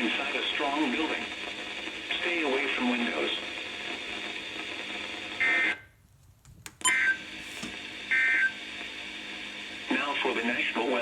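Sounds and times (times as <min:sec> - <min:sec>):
radio hiss: 0:00.0 - 0:05.8, 0:06.9 - 0:11.0.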